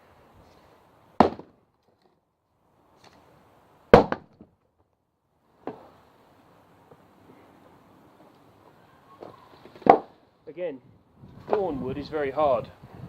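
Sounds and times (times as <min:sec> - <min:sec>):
axe chopping wood: 0:01.2 - 0:01.6, 0:03.9 - 0:04.5, 0:09.8 - 0:10.1.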